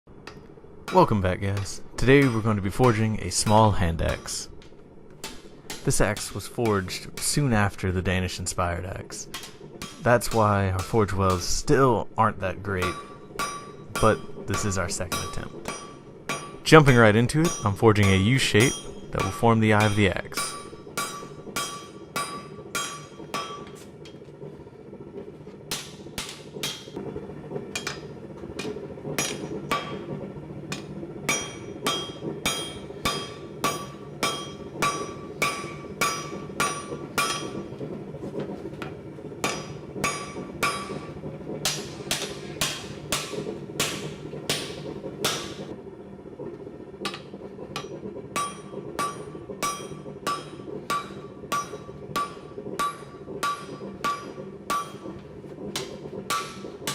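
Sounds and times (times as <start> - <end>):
hammer striking steel on anvil: 0.3 - 4.5, 9.3 - 11.7, 12.8 - 23.8, 25.7 - 27.0, 28.6 - 30.1, 30.7 - 37.6, 39.4 - 45.7, 47.8 - 55.1, 55.8 - 56.9.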